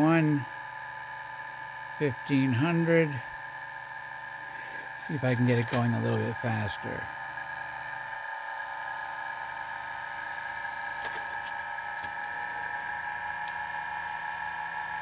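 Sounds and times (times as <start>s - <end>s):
motor high-pitched whine: 0.0s - 15.0s.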